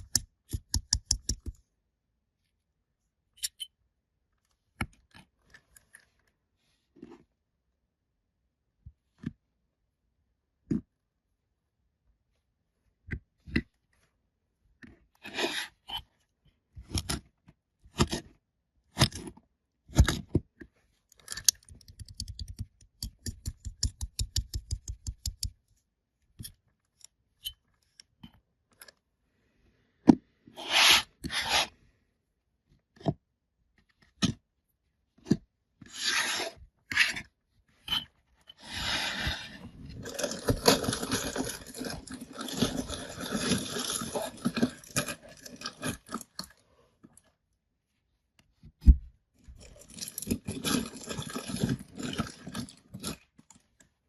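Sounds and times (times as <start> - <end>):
scissor-like snips and scrapes: 30.6 - 31.7, 35.9 - 37.3
plastic rustling and tearing: 40.0 - 46.4.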